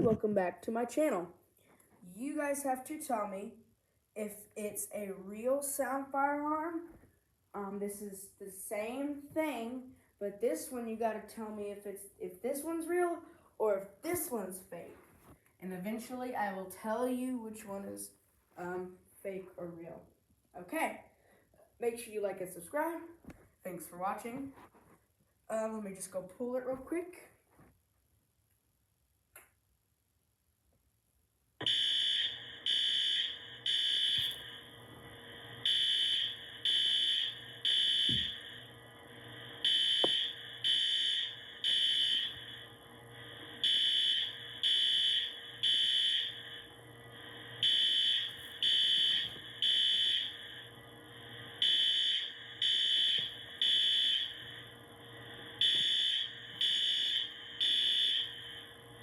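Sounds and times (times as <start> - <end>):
fire alarm beeping: 31.6 - 46.8, 47.6 - 59.0.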